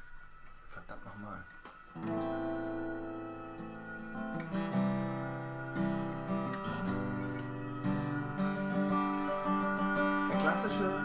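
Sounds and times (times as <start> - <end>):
acoustic guitar strumming: 2.0 - 11.0.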